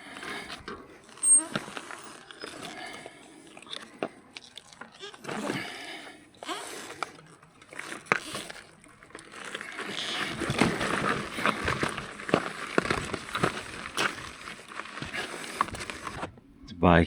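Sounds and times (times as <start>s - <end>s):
footsteps crunching on loose stones: 0.0s - 16.4s
rock knocks and scuffs underfoot: 7.8s - 16.4s.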